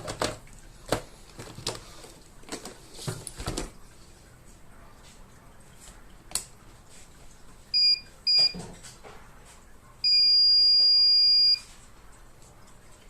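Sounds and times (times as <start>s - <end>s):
robot vacuum beeping: 10.1s - 11.6s.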